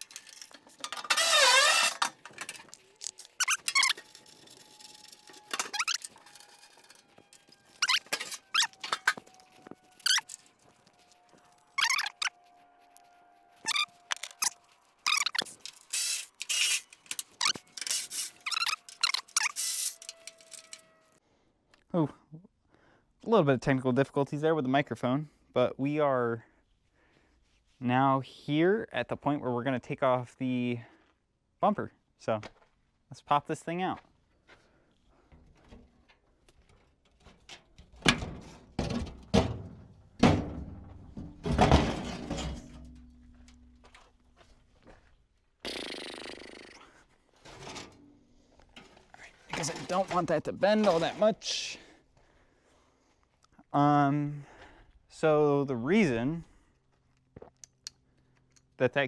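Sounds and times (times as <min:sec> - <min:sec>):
microphone squeaks bending in pitch: 0:07.8 - 0:09.2, 0:10.0 - 0:10.4, 0:11.8 - 0:12.4, 0:13.6 - 0:15.6, 0:18.4 - 0:19.9.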